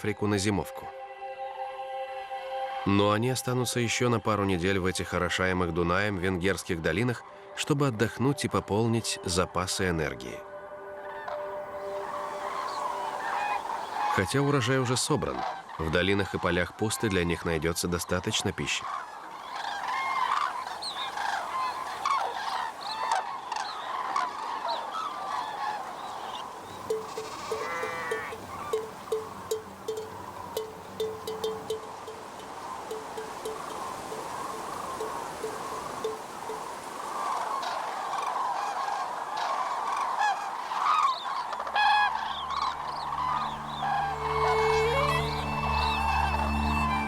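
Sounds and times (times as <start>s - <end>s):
music: 0.0s - 14.4s, 26.9s - 32.0s, 41.8s - 47.0s
cranes trumpeting calls: 10.8s - 16.0s, 18.8s - 47.0s.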